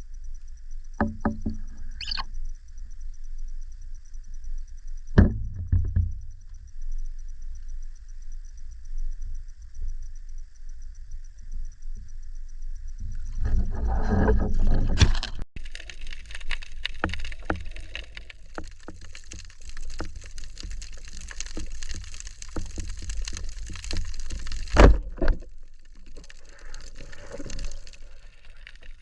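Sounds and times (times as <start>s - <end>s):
water moving around camera housing: 13.4s - 29.0s
sharp underwater clicks: 15.6s - 29.0s.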